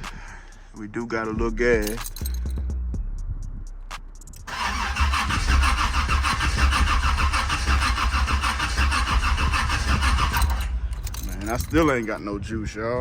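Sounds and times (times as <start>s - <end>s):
car starter cranking engine: 4.5s - 12.1s.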